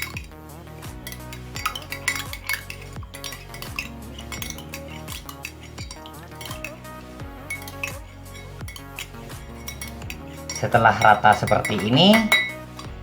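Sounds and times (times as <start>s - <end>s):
background music with beat: 0.0s - 13.0s
spoon clinking against glass: 0.0s - 13.0s.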